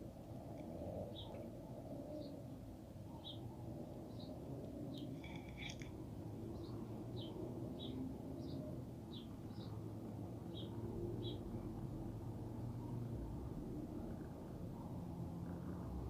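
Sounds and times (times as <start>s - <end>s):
bird chirping: 0.9s - 1.5s, 4.1s - 5.9s.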